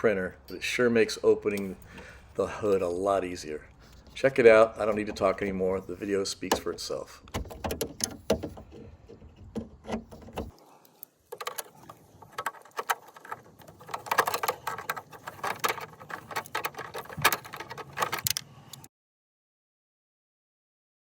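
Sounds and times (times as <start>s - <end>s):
plastic latch clicking and knocking: 6.4s - 10.6s, 11.3s - 18.5s.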